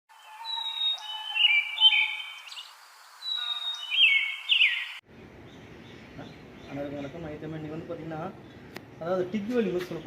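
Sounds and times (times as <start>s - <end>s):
bird chirping and whistling: 0.2s - 5.0s.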